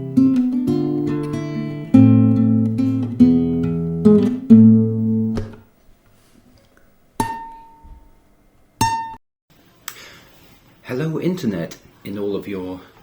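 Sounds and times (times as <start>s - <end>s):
acoustic guitar strumming: 0.0s - 5.6s, 7.2s - 9.2s
high guitar notes ringing: 0.0s - 5.6s, 7.2s - 9.2s.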